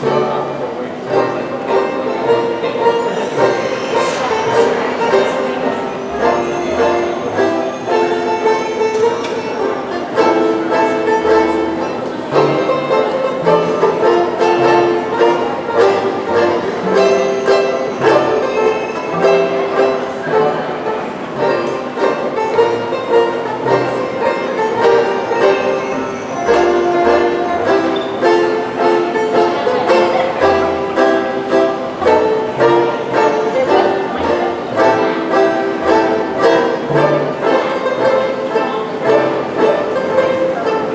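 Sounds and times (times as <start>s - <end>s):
plucked string music with bass: 0.0s - 40.9s.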